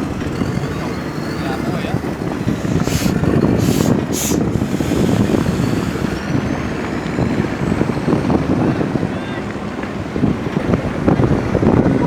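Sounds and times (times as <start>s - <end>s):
boat engine rumbling: 0.0s - 12.0s
short hisses: 2.7s - 6.2s.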